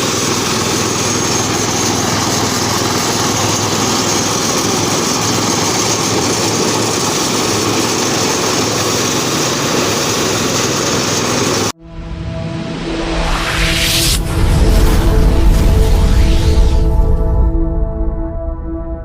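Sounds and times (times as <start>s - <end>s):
small engine running steadily: 0.0s - 11.8s.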